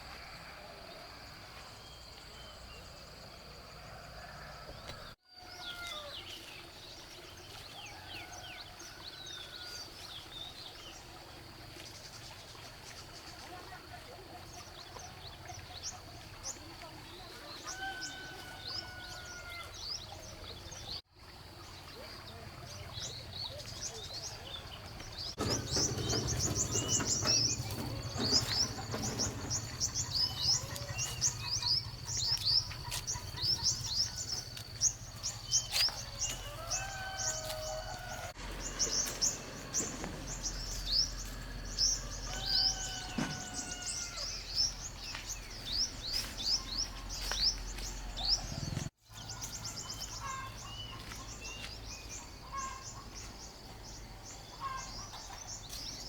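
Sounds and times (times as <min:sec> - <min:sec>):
small birds chirping: 0:21.7 - 0:56.0.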